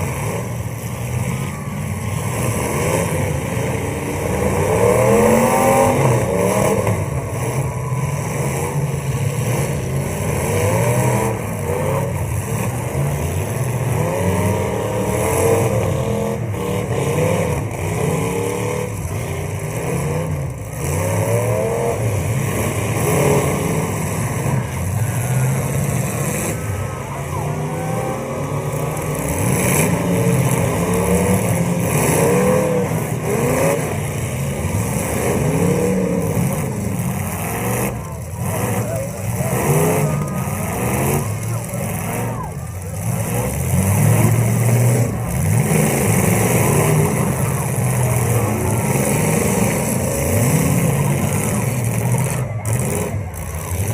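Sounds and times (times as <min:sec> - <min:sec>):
car engines revving hard: 0:00.0 - 0:53.9.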